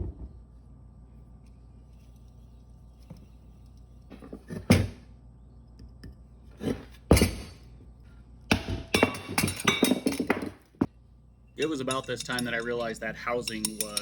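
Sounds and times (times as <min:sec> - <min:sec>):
metal parts knocking and clattering: 0:08.9 - 0:10.7, 0:11.6 - 0:14.0.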